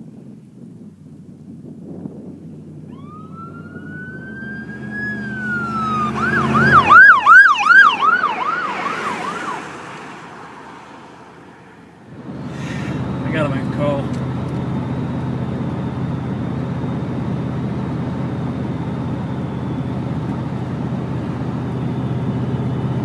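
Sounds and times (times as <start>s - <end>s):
police car siren passing: 2.8s - 13.1s.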